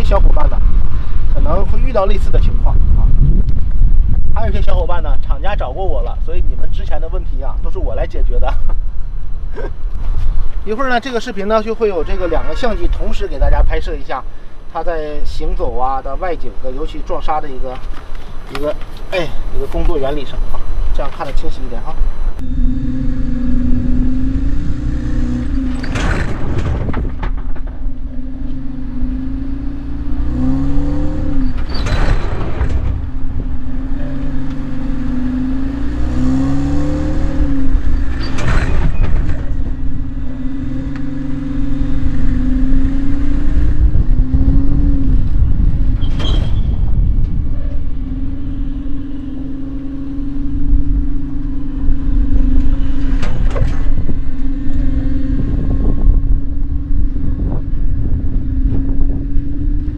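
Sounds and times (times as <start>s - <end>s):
car engine pulling away: 22.4s - 46.1s.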